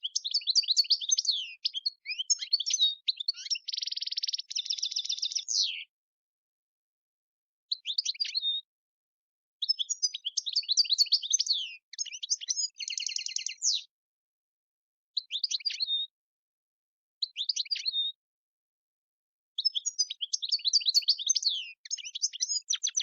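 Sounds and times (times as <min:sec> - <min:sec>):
finch singing: 0:00.0 - 0:05.9, 0:07.7 - 0:08.6, 0:09.6 - 0:13.9, 0:15.2 - 0:16.1, 0:17.2 - 0:18.2, 0:19.6 - 0:23.0.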